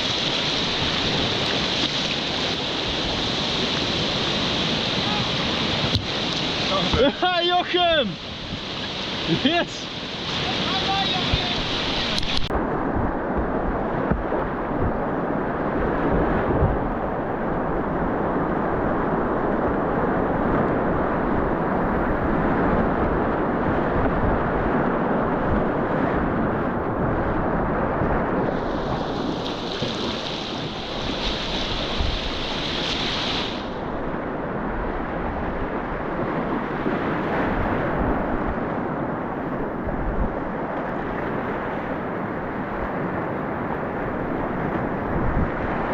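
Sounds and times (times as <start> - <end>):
hissy water splash: 0.0 - 12.6, 28.4 - 33.9
whitewater rapids rushing: 0.0 - 24.7, 28.4 - 38.6.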